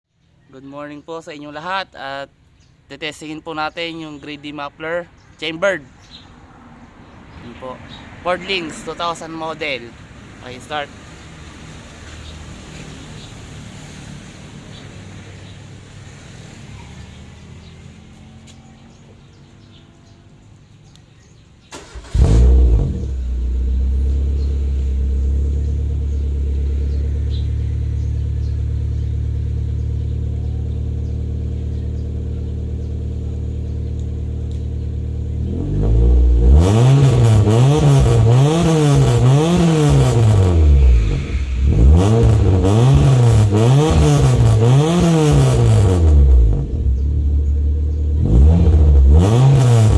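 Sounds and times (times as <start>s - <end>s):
car engine cranking and idling: 21.6s - 49.9s
car engine revving in blips: 21.7s - 49.9s.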